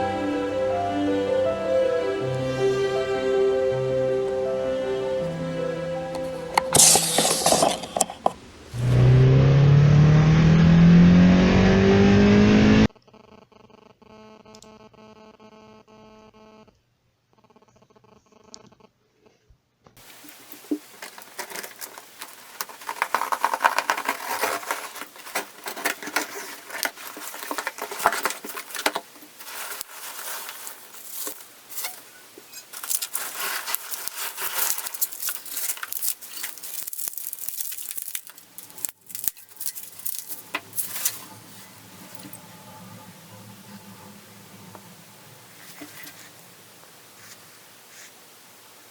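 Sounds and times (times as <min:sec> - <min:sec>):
packaging crinkling and tearing: 0:06.7 - 0:08.3, 0:20.0 - 0:41.5.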